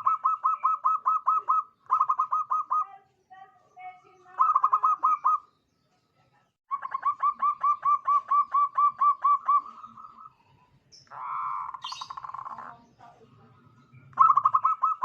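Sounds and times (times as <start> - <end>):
buzzy bird call: 0.0 - 2.9, 4.3 - 5.5, 14.1 - 15.0
dove cooing: 0.0 - 3.0, 4.3 - 5.5, 6.7 - 10.4, 11.1 - 12.9, 14.0 - 15.0.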